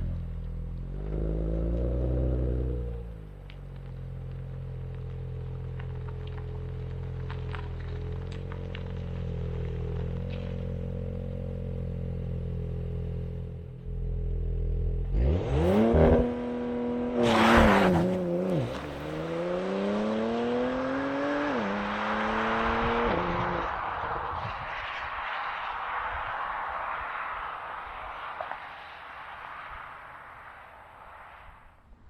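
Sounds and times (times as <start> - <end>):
car engine revving and accelerating: 0.0 - 3.3, 3.9 - 25.1.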